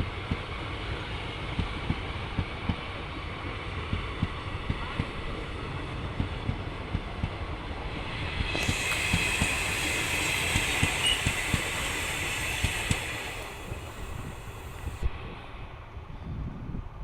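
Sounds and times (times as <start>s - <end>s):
train wheels clacking over rail joints: 6.1s - 15.0s
hissing rush: 7.6s - 15.1s.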